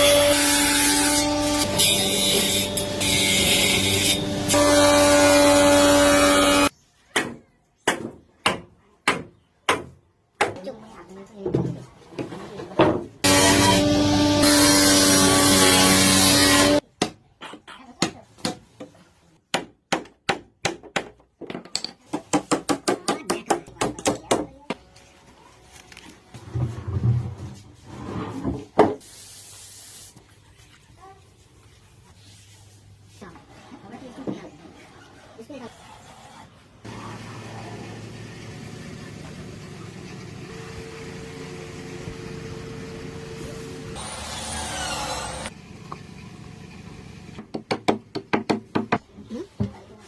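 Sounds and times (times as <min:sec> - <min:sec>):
power tool humming: 0:00.0 - 0:06.7, 0:13.2 - 0:16.8, 0:40.5 - 0:45.6
sharp knocks on wood: 0:47.4 - 0:49.0.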